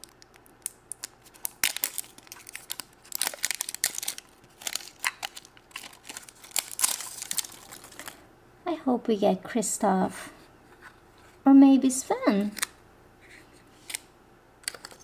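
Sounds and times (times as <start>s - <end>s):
plastic wrapper tearing and crinkling: 0.0s - 8.2s, 12.5s - 12.8s.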